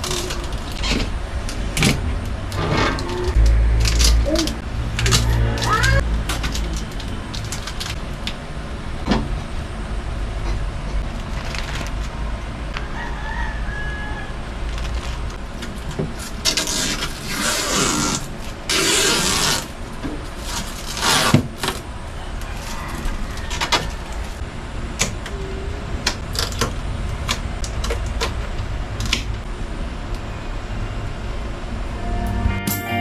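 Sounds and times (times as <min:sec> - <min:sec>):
rubbing and scrubbing: 0:00.0 - 0:08.2, 0:14.8 - 0:24.4
low steady hum: 0:00.0 - 0:33.0
guitar music: 0:31.9 - 0:33.0.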